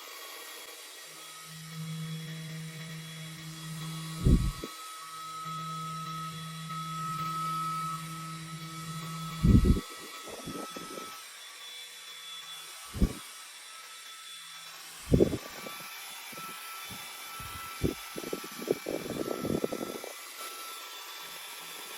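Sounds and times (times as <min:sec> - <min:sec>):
electric fan hum: 0:01.1 - 0:11.2, 0:12.8 - 0:13.2, 0:15.0 - 0:20.2.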